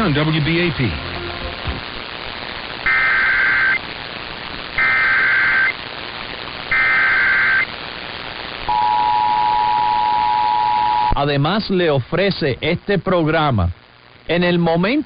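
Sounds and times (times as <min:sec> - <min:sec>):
steady hiss: 0:00.0 - 0:15.0
warbling digital data tones: 0:02.9 - 0:03.8, 0:04.8 - 0:05.8, 0:06.7 - 0:07.7
two-tone attention signal: 0:08.7 - 0:11.2.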